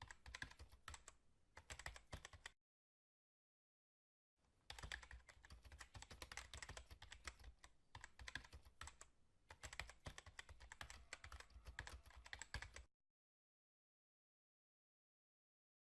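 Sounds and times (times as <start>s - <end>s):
keyboard typing: 0.0s - 2.6s, 4.7s - 12.9s.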